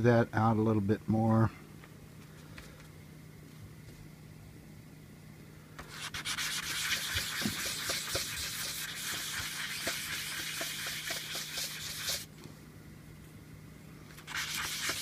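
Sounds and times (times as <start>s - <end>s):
scratchy sanding on sandpaper: 5.9s - 12.3s, 14.3s - 15.0s.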